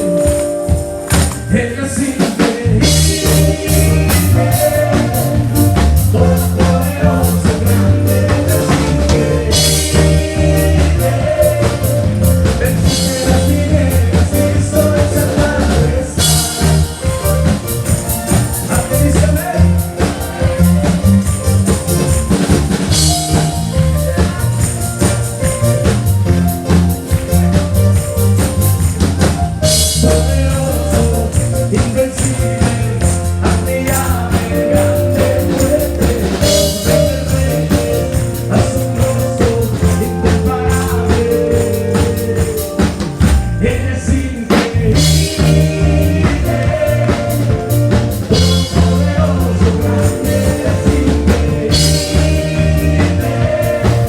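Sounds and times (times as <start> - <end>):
live band playing worship music: 0.0 - 54.0
person singing: 1.4 - 17.6, 29.8 - 54.0.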